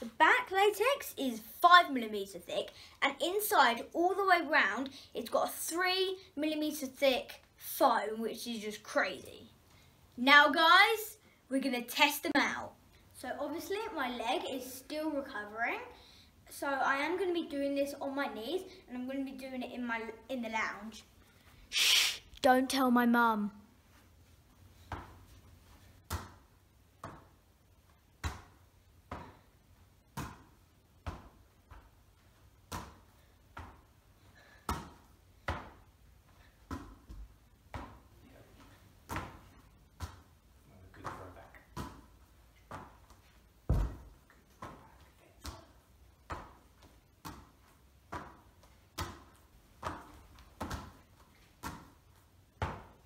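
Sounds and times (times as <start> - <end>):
ball thudding into gloves: 43.7 - 44.8.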